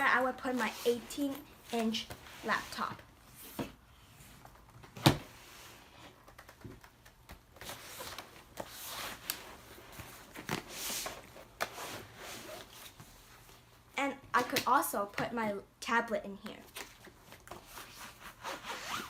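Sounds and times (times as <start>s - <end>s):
fabric backpack being handled: 7.6s - 13.5s, 17.6s - 19.0s.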